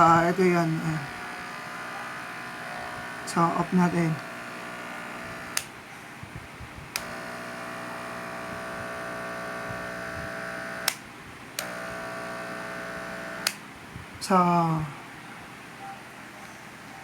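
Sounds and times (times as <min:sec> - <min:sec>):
hair clipper buzzing: 0:00.0 - 0:05.8, 0:06.9 - 0:13.6.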